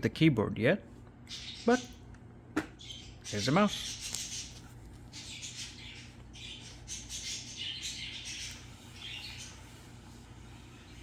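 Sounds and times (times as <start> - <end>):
mouse rubbing on cloth pad: 3.8 - 11.0.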